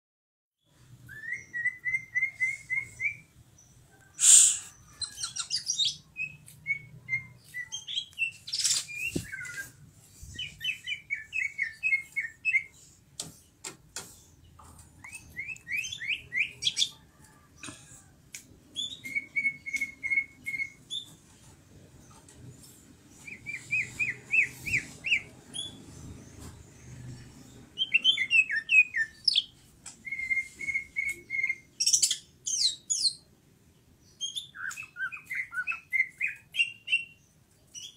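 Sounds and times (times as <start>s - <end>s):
bird singing whistled notes: 1.0s - 3.3s, 4.2s - 9.8s, 15.0s - 16.9s, 18.8s - 21.1s, 27.8s - 33.3s, 34.1s - 37.2s
harsh bird bursts: 4.2s - 5.0s.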